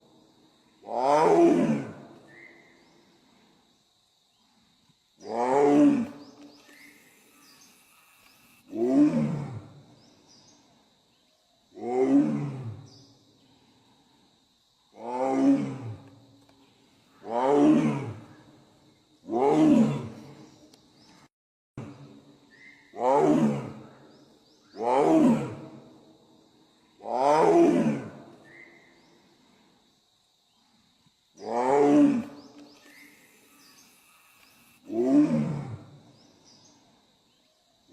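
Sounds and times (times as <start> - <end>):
tiger roaring: 0.9 - 2.0, 8.7 - 9.7, 11.8 - 12.8, 15.0 - 16.0, 17.2 - 18.3, 23.0 - 23.8, 27.2 - 28.1, 31.4 - 32.4, 34.8 - 35.9.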